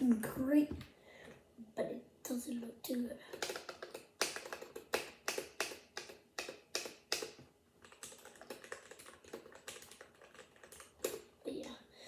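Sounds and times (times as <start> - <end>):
keyboard typing: 3.3 - 11.3.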